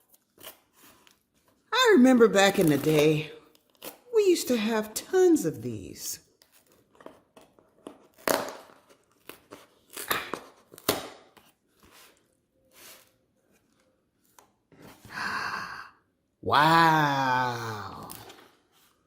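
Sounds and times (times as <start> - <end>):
packaging tearing and rustling: 6.4 - 13.9.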